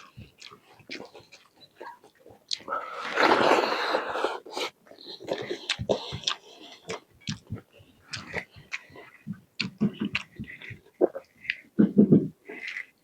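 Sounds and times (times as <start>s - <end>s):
person chewing food: 0.0s - 13.0s
mouth clicks: 5.3s - 13.0s.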